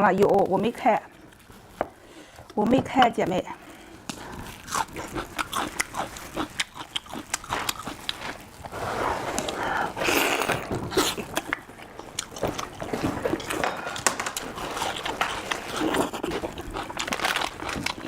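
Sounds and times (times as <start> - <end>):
biting and chewing: 3.6 - 18.0.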